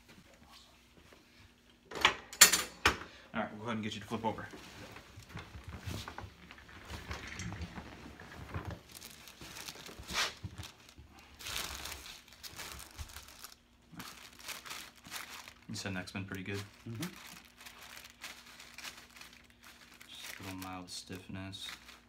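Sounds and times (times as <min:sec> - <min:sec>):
table covering and clothing rustling: 0:04.1 - 0:20.8, 0:21.6 - 0:22.0.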